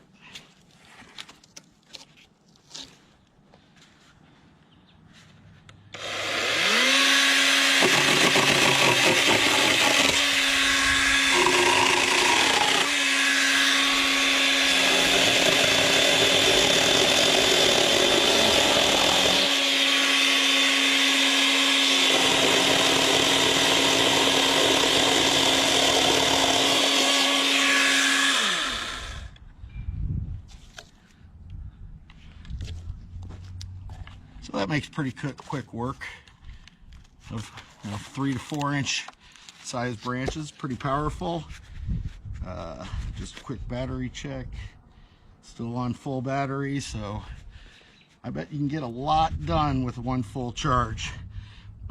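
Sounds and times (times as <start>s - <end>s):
chainsaw motor whine: 5.9s - 29.4s.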